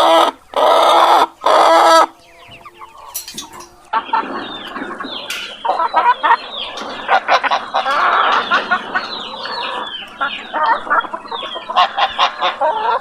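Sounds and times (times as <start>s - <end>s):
chickens clucking and chirping: 0.0s - 13.0s.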